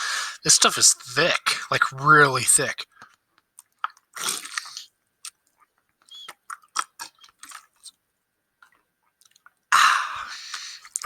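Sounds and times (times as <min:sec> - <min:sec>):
loud breath in: 0:00.0 - 0:00.4
chewing gummy candy: 0:02.9 - 0:08.0, 0:08.6 - 0:09.7
wet mouth clicks and smacks: 0:03.0 - 0:08.0, 0:08.6 - 0:09.6.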